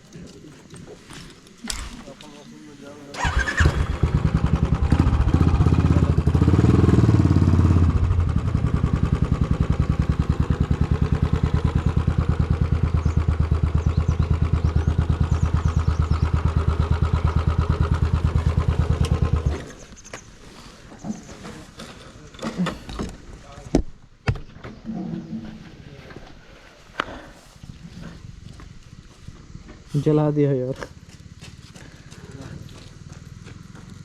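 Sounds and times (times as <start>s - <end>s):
motorcycle engine idling: 3.0s - 20.0s, 30.8s - 34.0s.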